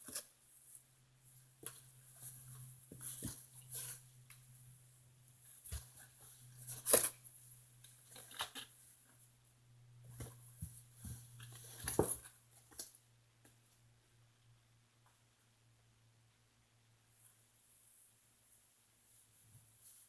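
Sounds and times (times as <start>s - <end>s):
kittens scratching and rustling: 0.0s - 9.3s, 10.0s - 13.0s.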